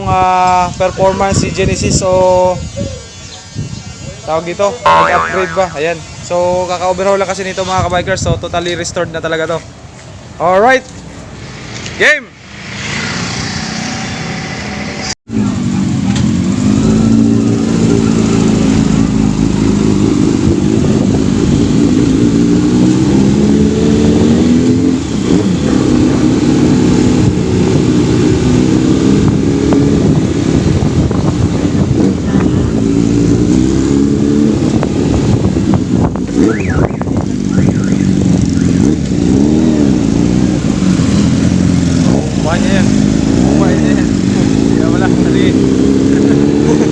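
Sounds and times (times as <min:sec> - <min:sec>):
motorcycle engine revving through gears: 0:12.6 - 0:46.9.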